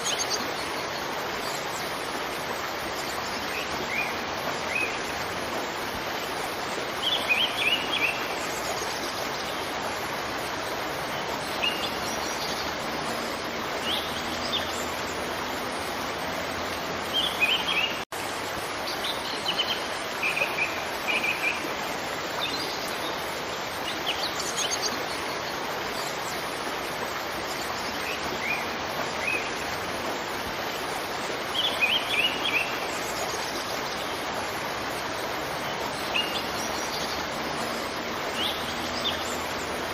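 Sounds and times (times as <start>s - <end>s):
waterfall rushing: 0.0s - 39.9s
small birds chirping: 2.8s - 18.1s.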